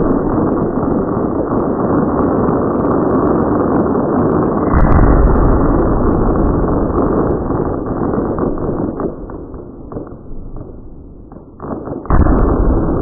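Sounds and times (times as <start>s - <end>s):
fireworks bangs: 0.0s - 13.0s.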